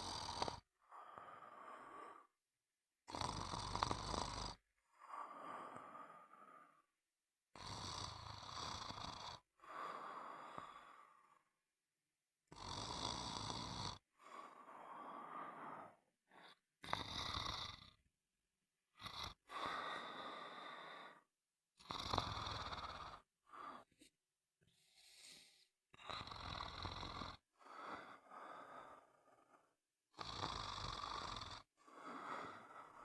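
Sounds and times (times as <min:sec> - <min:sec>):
person snoring: 0:00.0 - 0:02.3, 0:03.1 - 0:06.9, 0:07.5 - 0:11.5, 0:12.5 - 0:18.0, 0:18.9 - 0:23.9, 0:24.8 - 0:33.0.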